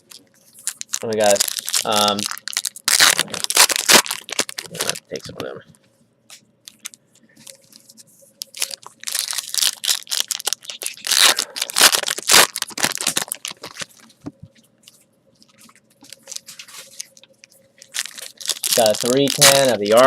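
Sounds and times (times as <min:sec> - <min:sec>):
wrappers tearing and crinkling: 0:00.6 - 0:05.4, 0:08.4 - 0:14.1, 0:15.4 - 0:20.0.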